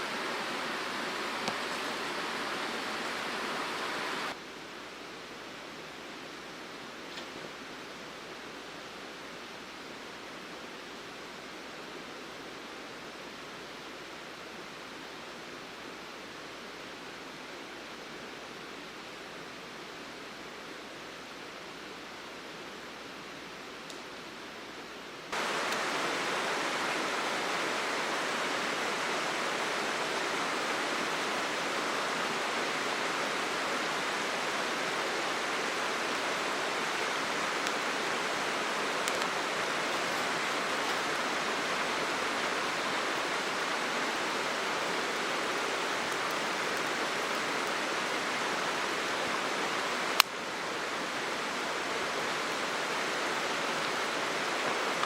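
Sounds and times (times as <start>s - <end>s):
stream water rushing: 0.0s - 4.4s, 25.3s - 55.0s.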